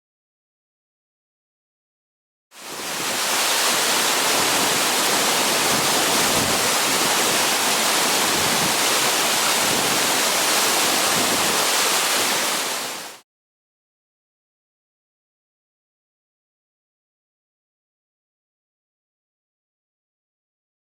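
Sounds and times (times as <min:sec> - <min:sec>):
waterfall rushing: 0:02.6 - 0:13.2.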